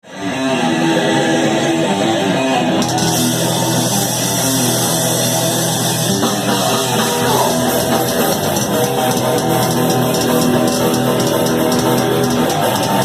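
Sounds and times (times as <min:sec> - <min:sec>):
distorted electric guitars: 0:00.0 - 0:13.0
drum kit: 0:02.7 - 0:13.0.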